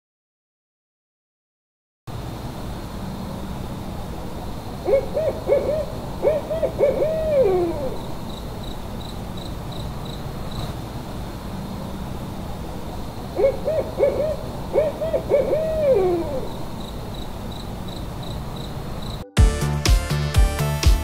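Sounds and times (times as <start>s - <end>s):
owl hooting: 4.8s - 10.6s, 13.2s - 19.2s.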